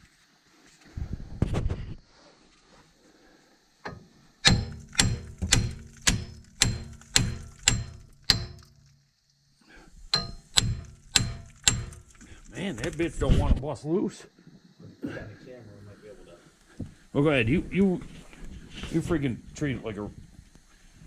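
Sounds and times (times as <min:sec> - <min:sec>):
hammer striking metal hub: 0:03.9 - 0:08.9, 0:10.1 - 0:12.3.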